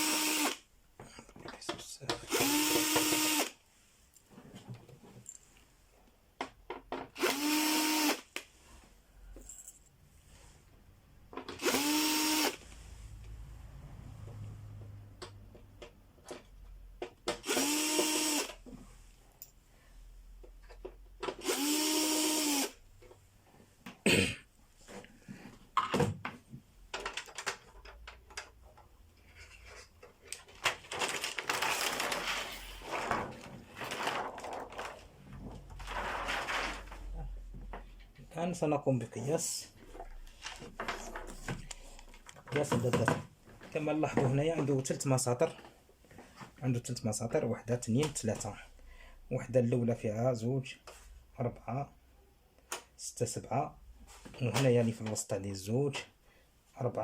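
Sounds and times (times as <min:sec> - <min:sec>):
electric screwdriver whirring: 0:00.0 - 0:00.6, 0:02.3 - 0:03.6, 0:07.2 - 0:08.3, 0:11.6 - 0:12.6, 0:17.4 - 0:18.6, 0:21.3 - 0:22.8
clicks and knocks of parts: 0:25.8 - 0:32.2.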